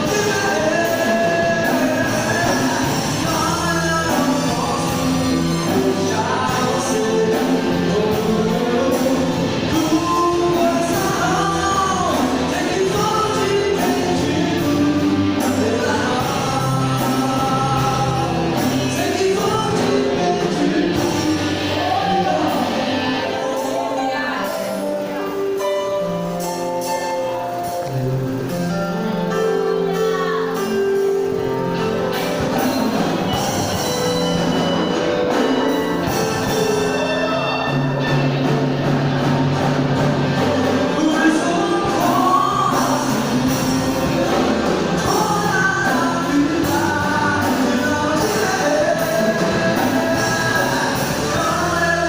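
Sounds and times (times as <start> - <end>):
band playing: 0.0 - 52.0
bass: 0.0 - 52.0
keyboard and synth chords: 0.0 - 52.0
person singing: 0.0 - 52.0.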